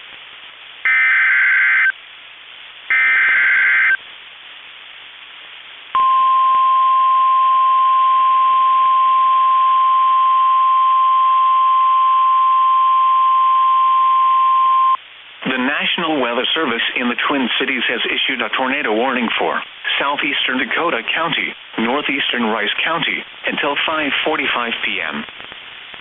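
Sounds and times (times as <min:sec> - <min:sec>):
digital data squawks: 0:00.9 - 0:01.9, 0:02.9 - 0:04.0
steady warning alarm tone: 0:00.9 - 0:01.9, 0:02.9 - 0:04.0.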